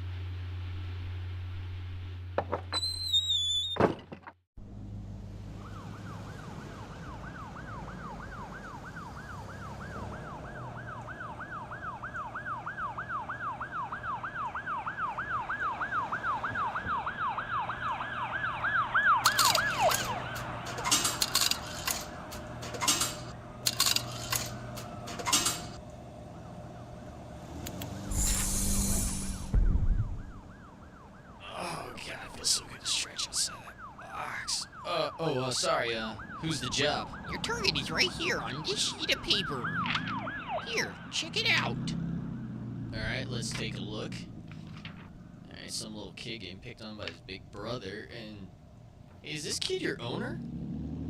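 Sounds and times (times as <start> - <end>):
siren wailing in a fast warble: 5.7 - 20.6, 28.1 - 31.5, 33.3 - 41.8
short burst of noise: 28.1 - 29.9.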